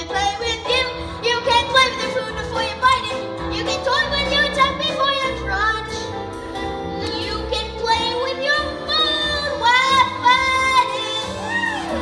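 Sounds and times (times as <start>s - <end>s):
instrumental accompaniment: 0.0s - 12.0s
musical theatre singing: 0.0s - 12.0s.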